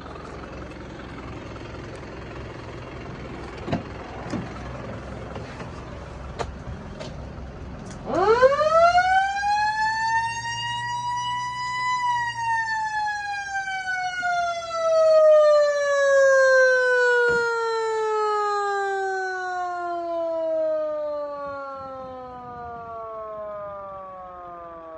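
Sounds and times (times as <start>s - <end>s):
truck engine idling: 0.0s - 11.0s
fire truck siren wailing: 7.9s - 24.9s.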